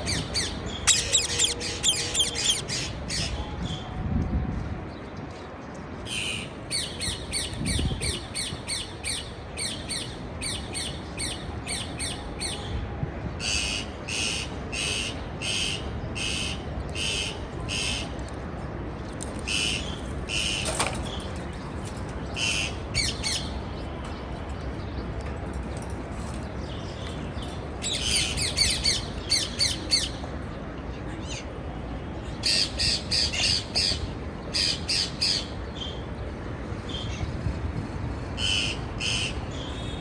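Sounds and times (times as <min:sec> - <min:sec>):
parakeet squawking: 0:00.9 - 0:02.6.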